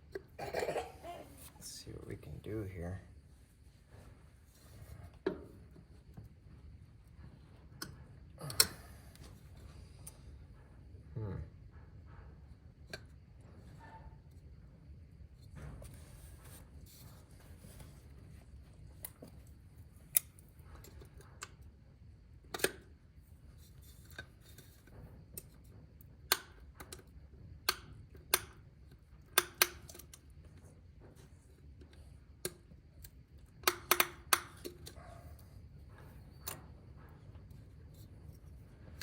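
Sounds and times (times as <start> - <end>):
metallic clicks of hand tools: 22.5 - 22.8, 32.4 - 35.0.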